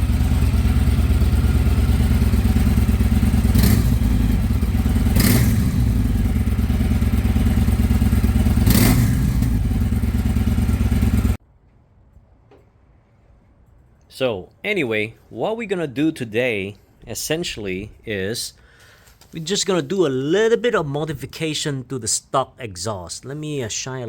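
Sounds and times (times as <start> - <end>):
motorcycle engine running: 0.0 - 11.4.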